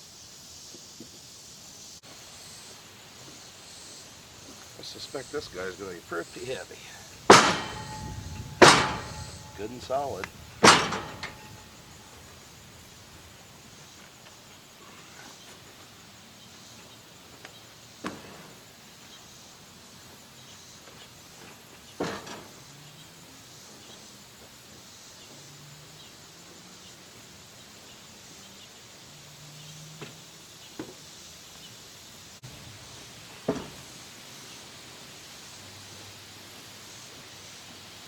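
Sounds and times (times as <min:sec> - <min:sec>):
outdoor background noise: 0:00.0 - 0:38.0
wooden boards knocking down: 0:07.1 - 0:12.1.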